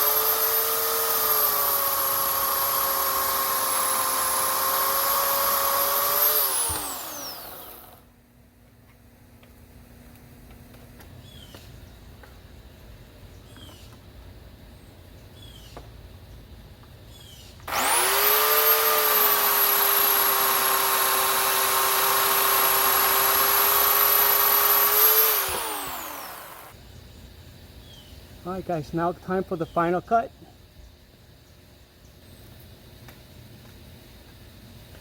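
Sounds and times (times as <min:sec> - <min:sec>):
electric chainsaw whining: 0:00.0 - 0:08.1, 0:17.7 - 0:26.8.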